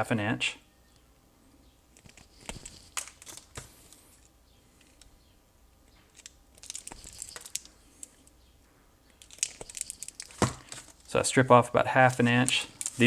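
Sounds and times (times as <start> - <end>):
insulation crackling clicks: 5.9 - 8.2, 9.1 - 11.2
wire strippers snapping: 6.1 - 8.1.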